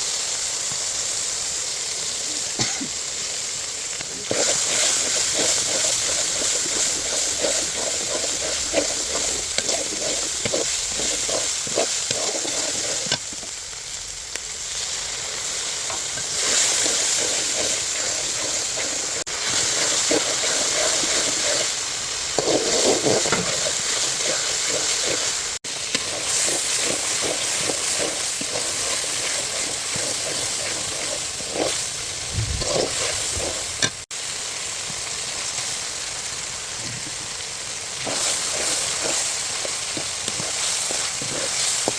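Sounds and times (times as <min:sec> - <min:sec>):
meat sizzling in a pan: 0:00.0 - 0:41.9
spatula scraping a pan: 0:04.2 - 0:13.5, 0:15.9 - 0:34.1, 0:38.0 - 0:41.9.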